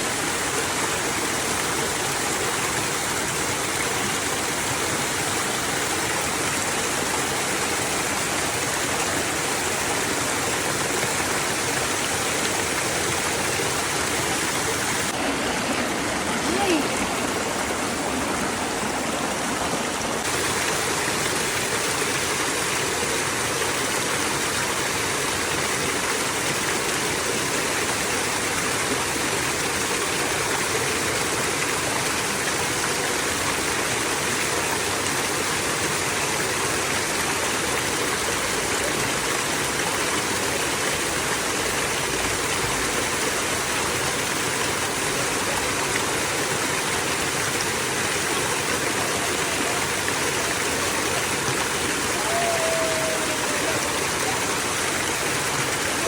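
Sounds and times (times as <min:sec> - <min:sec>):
running water flowing: 0:00.0 - 0:56.0.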